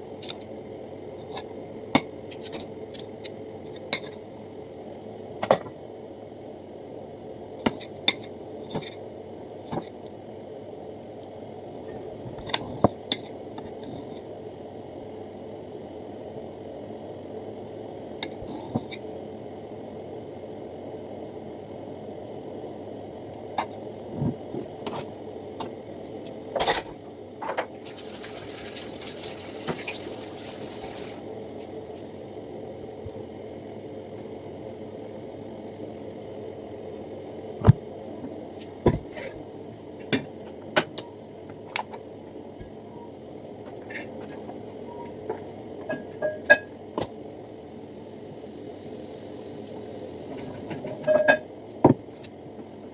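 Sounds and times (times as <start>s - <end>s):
pot bubbling on stove: 27.0s - 32.0s.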